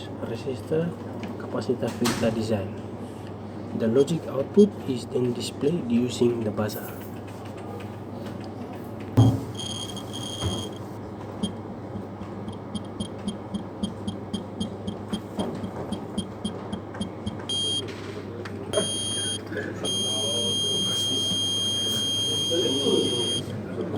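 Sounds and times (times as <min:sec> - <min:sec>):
high-pitched buzzer beeping: 0:09.2 - 0:17.8, 0:18.8 - 0:23.5
steady low hum: 0:09.2 - 0:17.9, 0:18.8 - 0:23.9.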